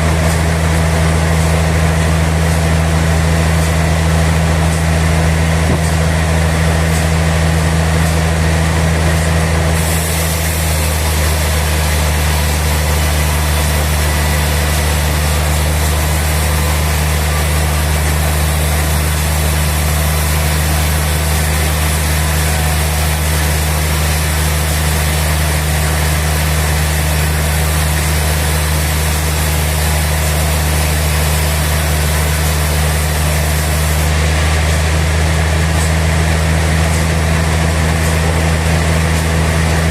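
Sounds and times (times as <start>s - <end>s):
sawmill machinery humming: 0.0s - 39.9s
bright hiss: 9.8s - 34.8s.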